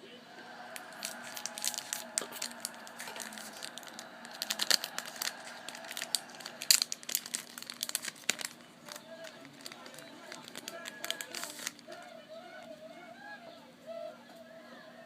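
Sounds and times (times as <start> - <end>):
foil wrapper crinkling and tearing: 0.8 - 12.1.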